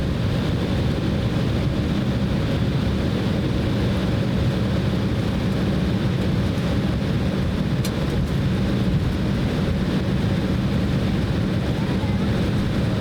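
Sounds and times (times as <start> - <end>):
airliner cabin engine hum: 0.0 - 13.0.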